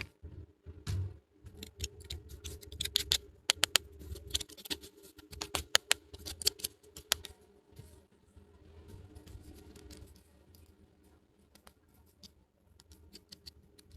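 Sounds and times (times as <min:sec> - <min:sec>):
plastic toy pieces clicking: 0:01.6 - 0:07.3.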